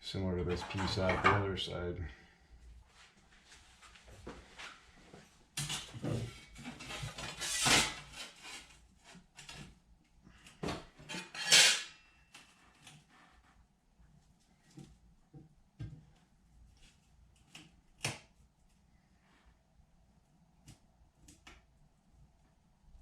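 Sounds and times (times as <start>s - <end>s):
metal plate clanking and scraping: 0.5s - 1.5s, 11.0s - 12.0s.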